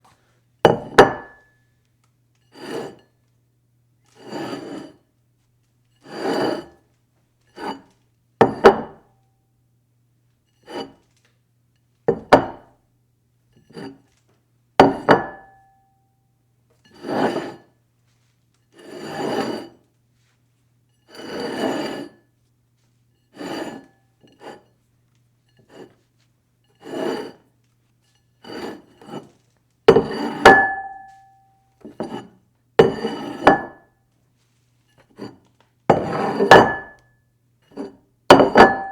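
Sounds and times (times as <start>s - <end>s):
dish knocking: 0.7s - 1.4s, 38.3s - 38.9s
dish scraping across table: 2.5s - 3.1s, 4.2s - 5.0s, 6.0s - 6.8s, 7.5s - 9.0s, 10.6s - 11.0s, 16.9s - 17.7s, 18.8s - 19.8s, 21.1s - 22.2s, 23.3s - 24.7s, 25.6s - 26.0s, 26.7s - 27.5s, 28.4s - 31.2s, 31.8s - 33.8s, 35.0s - 37.0s.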